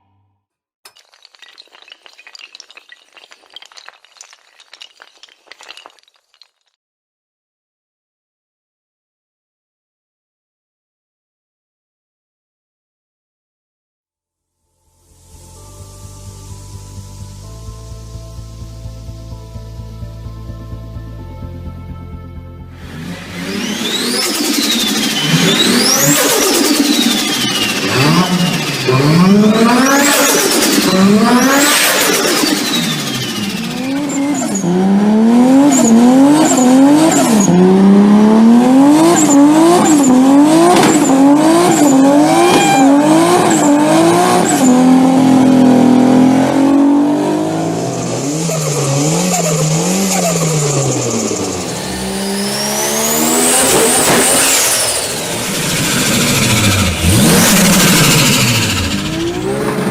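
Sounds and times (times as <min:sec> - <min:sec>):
car engine revving: 0:22.8 - 0:59.9
turbo whistle: 0:42.4 - 0:43.0.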